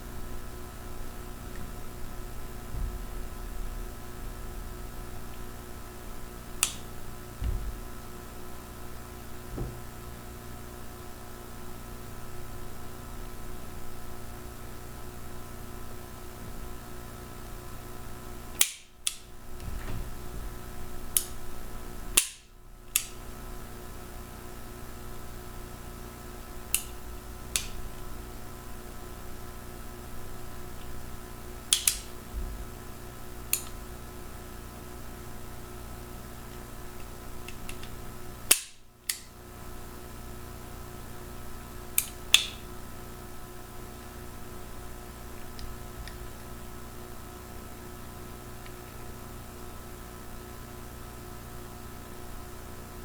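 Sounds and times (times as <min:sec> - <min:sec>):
revolver action clicking: 0:06.6 - 0:06.9, 0:26.7 - 0:27.8, 0:31.7 - 0:32.2, 0:42.0 - 0:42.7
revolver action metallic clicks: 0:06.6 - 0:06.9, 0:18.6 - 0:19.3, 0:21.1 - 0:21.4, 0:22.2 - 0:23.2, 0:26.7 - 0:26.9, 0:27.5 - 0:27.8, 0:31.7 - 0:32.2, 0:33.5 - 0:33.8, 0:36.5 - 0:39.4, 0:42.0 - 0:42.7.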